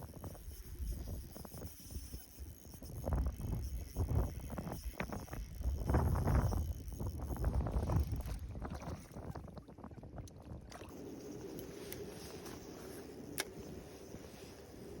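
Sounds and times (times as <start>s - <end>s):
wind buffeting microphone: 0.0s - 15.0s
handling rustle: 10.9s - 15.0s
sharp click: 13.3s - 13.6s.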